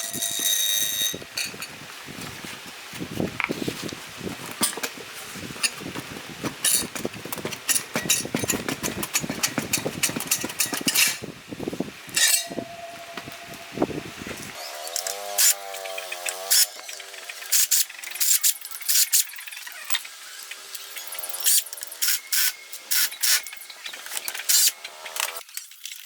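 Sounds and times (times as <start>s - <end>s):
taps and knocks on metal parts: 6.4s - 11.2s
brief steady whine: 12.4s - 14.6s.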